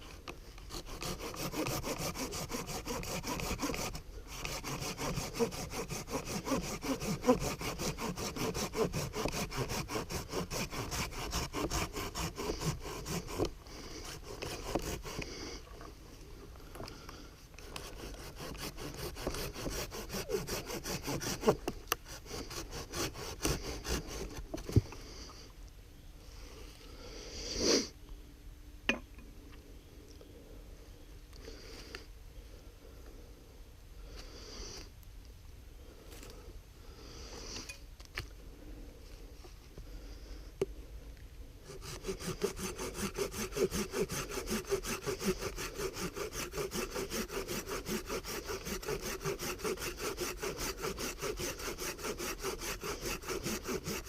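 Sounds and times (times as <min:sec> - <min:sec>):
hand saw cutting wood: 0:00.1 - 0:15.4, 0:17.6 - 0:24.8, 0:41.7 - 0:54.0.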